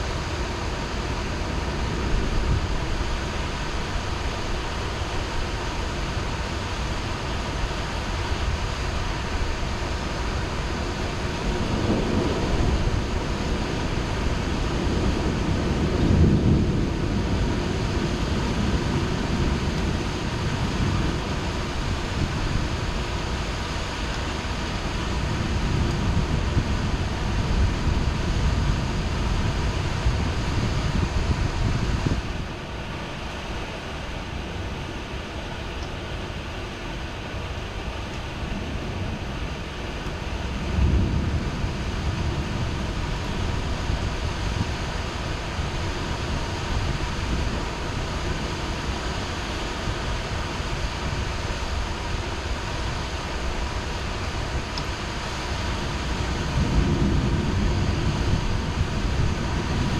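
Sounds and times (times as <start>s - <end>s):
rolling thunder rumbles: 0.0s - 35.2s, 37.0s - 59.9s
heavy rain falling: 0.0s - 59.9s.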